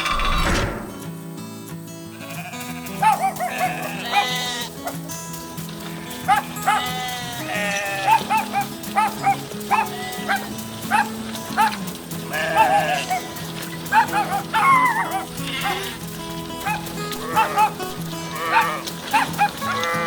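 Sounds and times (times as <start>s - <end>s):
short high bleat-like animal calls: 2.1s - 5.0s, 6.0s - 8.7s, 9.7s - 10.6s, 12.3s - 16.1s, 16.7s - 20.0s.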